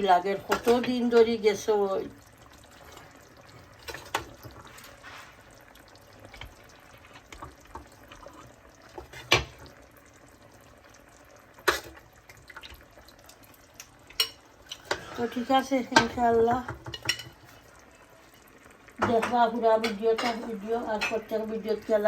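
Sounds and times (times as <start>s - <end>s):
kitchenware clinking: 13.8s - 17.7s, 19.0s - 21.5s.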